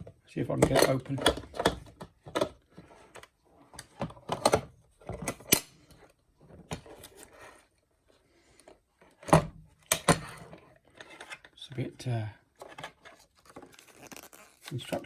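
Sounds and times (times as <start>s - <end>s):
scratchy packaging rustling: 12.6s - 15.0s.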